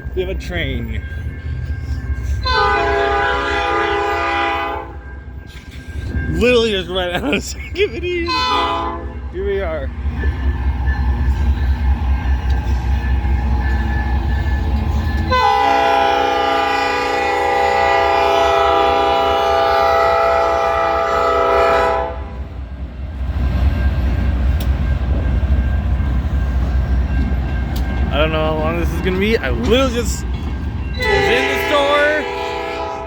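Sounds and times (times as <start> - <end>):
locomotive horn blast: 2.4 - 5.0, 8.2 - 9.2, 15.3 - 22.5, 31.0 - 33.0.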